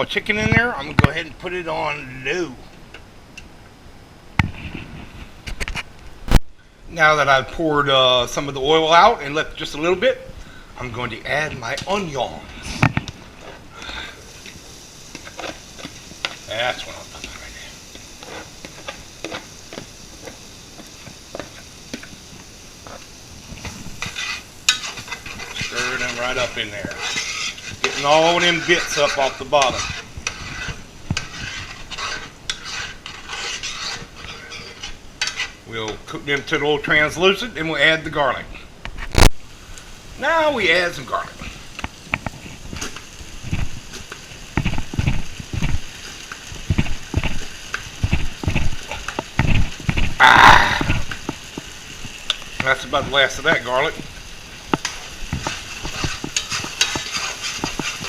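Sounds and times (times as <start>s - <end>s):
onions sizzling in a pan: 6.6s - 58.0s
spoon scraping a pan: 11.6s - 36.5s, 54.6s - 58.0s.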